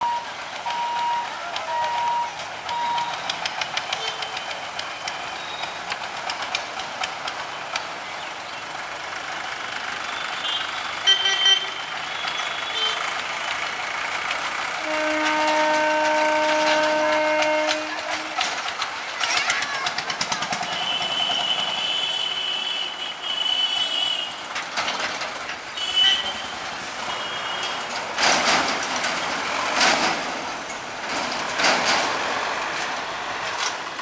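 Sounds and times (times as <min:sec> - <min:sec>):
electronic warning beeps: 0:00.0 - 0:03.3
locomotive horn blast: 0:14.8 - 0:18.7, 0:20.6 - 0:24.4.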